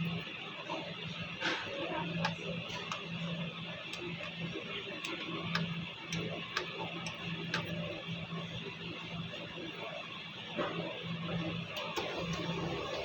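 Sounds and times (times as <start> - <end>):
laser printer humming: 0.0 - 13.0
printer ticks: 1.6 - 8.6.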